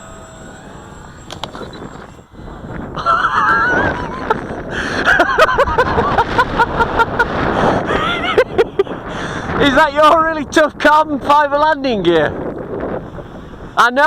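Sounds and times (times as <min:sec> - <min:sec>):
sharp clicks: 0:00.0 - 0:02.3
people laughing: 0:03.0 - 0:09.0.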